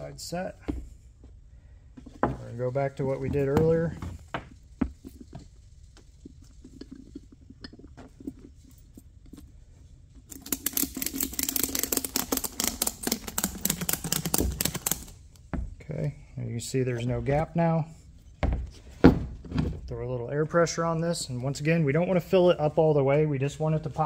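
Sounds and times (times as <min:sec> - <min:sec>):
ratchet strap clicking: 0:10.3 - 0:15.2.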